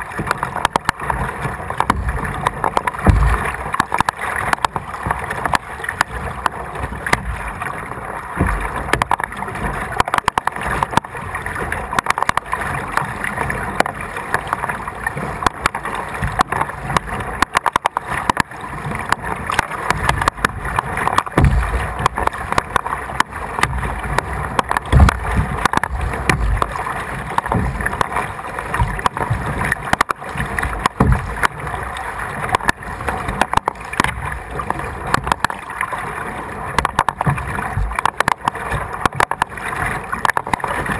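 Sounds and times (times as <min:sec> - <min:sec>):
paddle splashes: 0:00.0 - 0:40.9
water sloshing against hull: 0:00.0 - 0:40.9
knocks and thumps: 0:01.8 - 0:07.4, 0:08.4 - 0:09.3, 0:19.5 - 0:31.6, 0:36.8 - 0:39.5.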